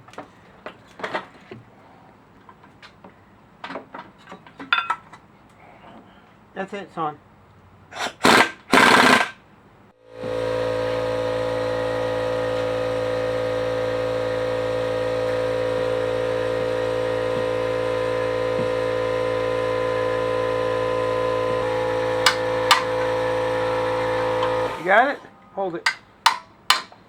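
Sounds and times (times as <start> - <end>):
shop machine motor whirring: 10.1 - 25.3.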